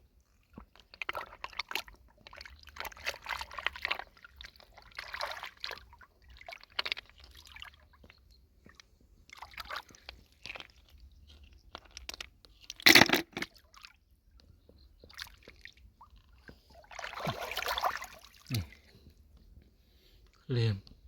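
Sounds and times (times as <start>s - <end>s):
shallow water splashing: 0.6s - 8.0s, 8.7s - 11.0s, 15.0s - 19.0s
mud crunching and squishing: 0.7s - 8.3s.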